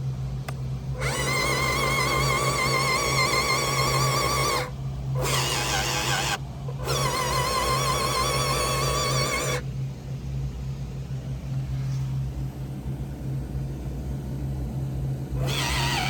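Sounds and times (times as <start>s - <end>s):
steady low hum: 0.0s - 16.0s
electric motor whining: 0.9s - 9.7s, 15.3s - 16.0s.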